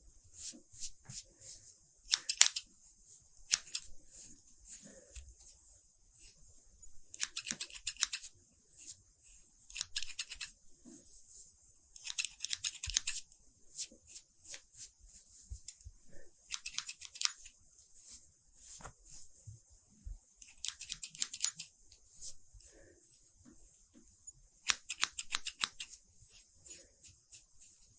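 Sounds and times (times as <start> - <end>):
scissors snipping hair: 2.1 - 2.7, 3.4 - 3.9, 7.1 - 8.3, 9.7 - 10.6, 12.0 - 13.3, 16.5 - 17.6, 20.4 - 21.7, 24.6 - 26.0.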